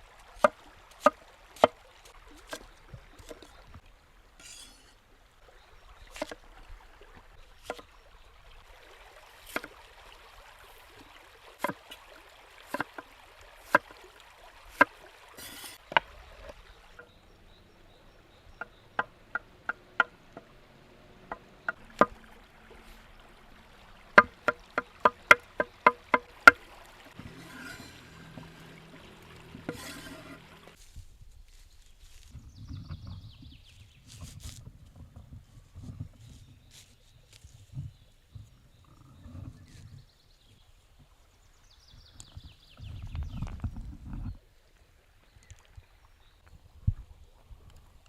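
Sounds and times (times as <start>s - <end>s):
faint stream running: 0.0s - 48.0s
sharp knocks and taps: 18.6s - 20.5s.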